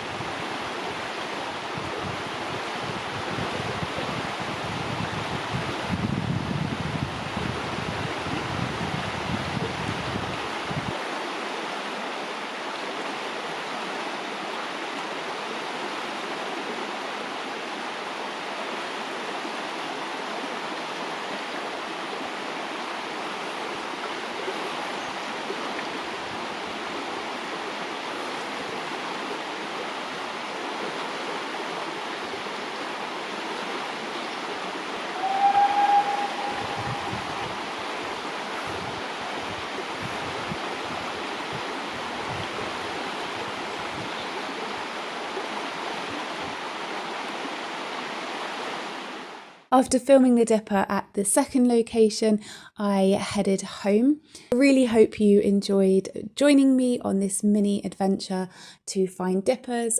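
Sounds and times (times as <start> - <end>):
wind rumble on microphone: 0.0 - 11.0, 35.0 - 44.8
river rushing over stones: 7.0 - 35.3, 37.1 - 49.6
short pitched sound: 35.0 - 38.1.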